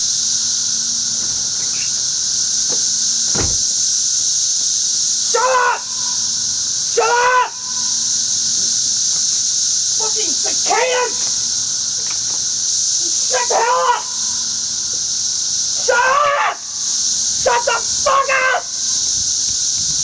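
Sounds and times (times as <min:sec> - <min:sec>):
short pitched calls: 0:00.0 - 0:04.2
cicadas buzzing: 0:00.0 - 0:20.0
brief thump: 0:02.6 - 0:03.8.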